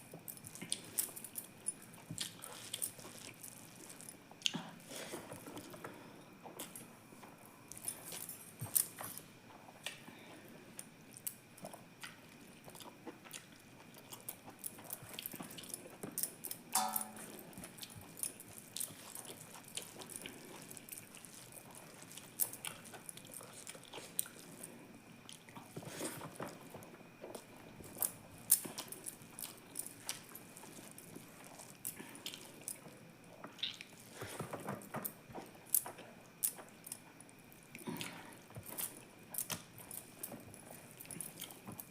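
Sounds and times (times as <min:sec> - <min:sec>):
person chewing and biting: 0:00.3 - 0:05.8, 0:11.1 - 0:32.9
faint steady high tone: 0:16.7 - 0:17.7
wet mouth clicks and smacks: 0:33.6 - 0:34.0.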